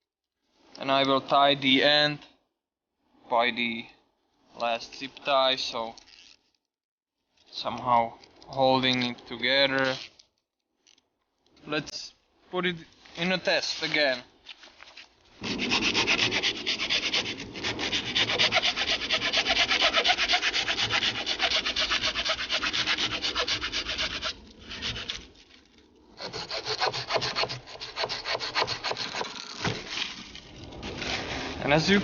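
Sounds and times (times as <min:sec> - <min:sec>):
hand saw cutting wood: 0:15.4 - 0:30.2.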